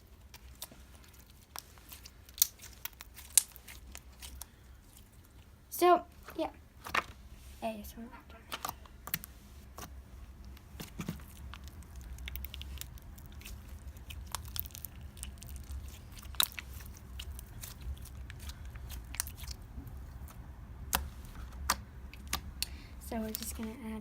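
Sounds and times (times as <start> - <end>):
low steady hum: 0.0 - 24.0
slime clicking and popping: 0.3 - 4.5, 10.5 - 23.5.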